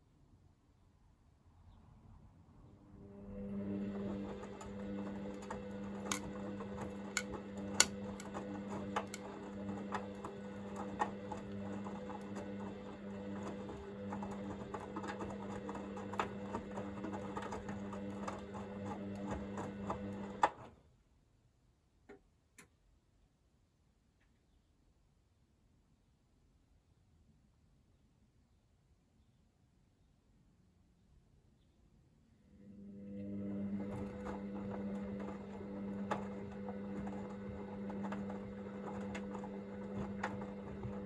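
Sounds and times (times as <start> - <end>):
washing machine drum motor humming: 3.4 - 20.8, 33.0 - 41.0.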